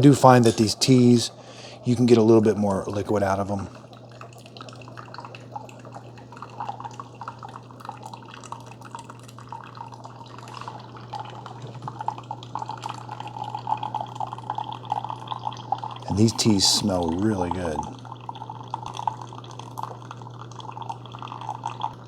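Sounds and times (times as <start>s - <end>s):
water streaming into a mug: 0.0s - 22.0s
machine humming: 8.6s - 22.0s.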